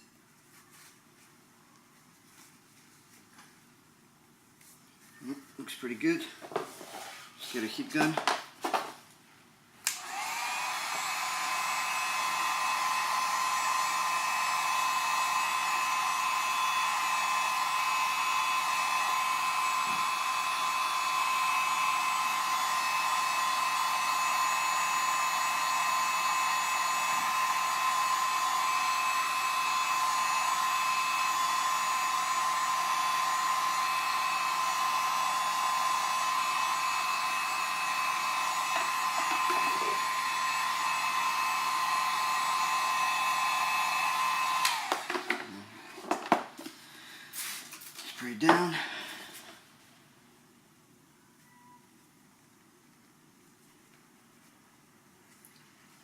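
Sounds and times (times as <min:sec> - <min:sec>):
heat gun whine: 0:09.8 - 0:46.7.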